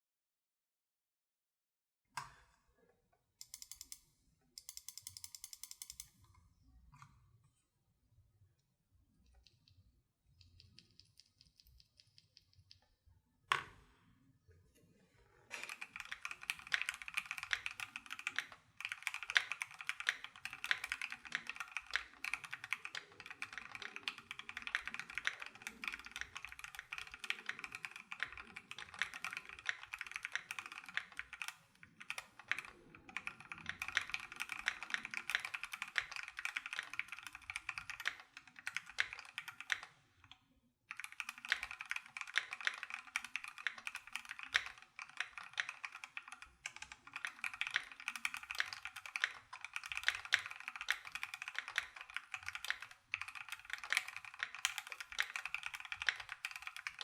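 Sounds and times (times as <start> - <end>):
mechanical keyboard keystroke clacks: 4.6 - 6.2, 15.5 - 39.9, 40.9 - 57.0.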